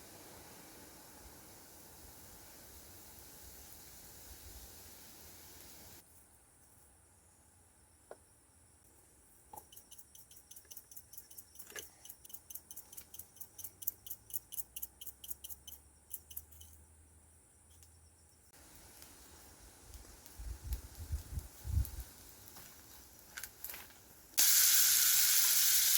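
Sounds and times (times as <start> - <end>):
faint steady hiss: 0.0 - 9.2, 17.6 - 25.9
insects chirping: 6.0 - 23.6.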